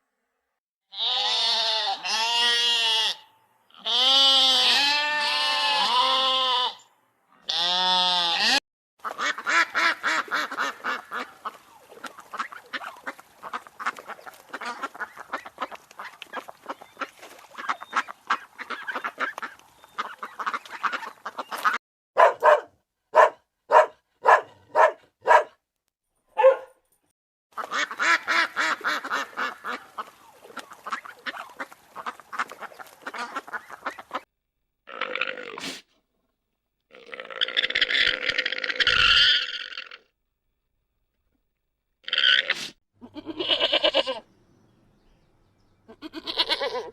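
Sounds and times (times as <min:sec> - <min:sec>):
waterfowl honking and quacking: 0:08.4 - 0:21.8, 0:27.6 - 0:34.3.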